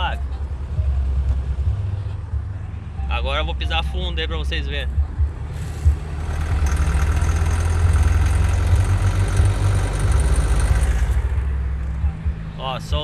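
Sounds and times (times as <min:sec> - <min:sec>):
car engine at full throttle: 0:05.0 - 0:13.0
fast clattering rattle: 0:05.5 - 0:11.3.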